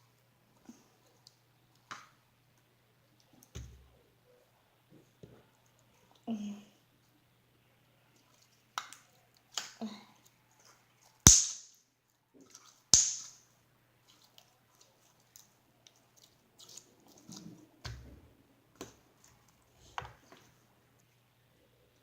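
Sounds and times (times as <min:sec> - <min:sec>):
slime squishing by hand: 0:14.0 - 0:20.6.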